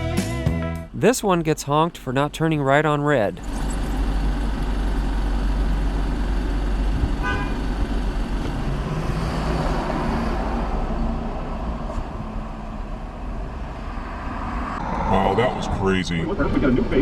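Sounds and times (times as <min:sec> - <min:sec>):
low rumble of traffic: 0:00.9 - 0:17.0
car horn honk: 0:07.2 - 0:07.7.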